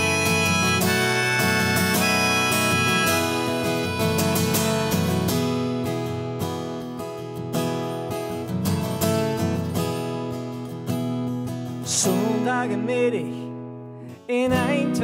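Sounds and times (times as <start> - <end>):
held notes: 0.0 - 5.9
acoustic guitar strumming: 0.0 - 15.0.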